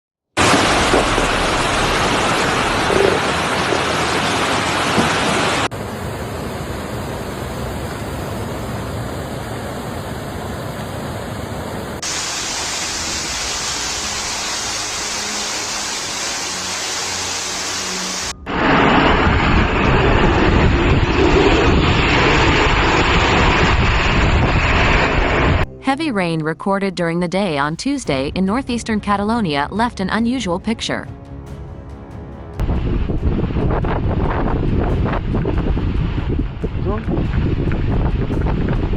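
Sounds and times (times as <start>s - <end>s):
heavy rain downpour: 0.4s - 9.0s, 12.0s - 25.6s.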